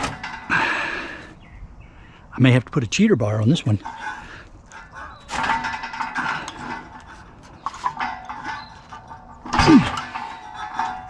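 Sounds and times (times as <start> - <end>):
metal tools clinking and scraping: 0.0 - 0.9, 3.3 - 11.0.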